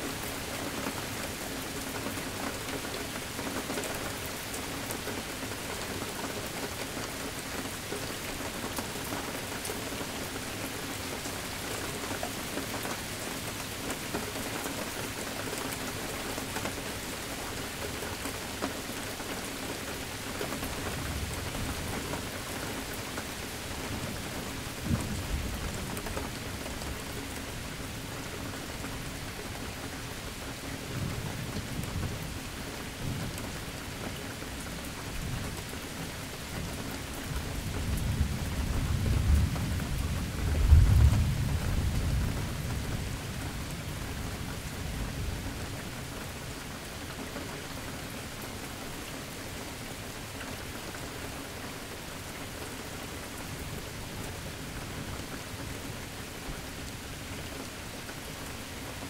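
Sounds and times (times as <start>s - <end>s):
steady rain falling: 0.0s - 59.0s
low rumbles of thunder: 24.1s - 26.7s, 37.6s - 45.9s.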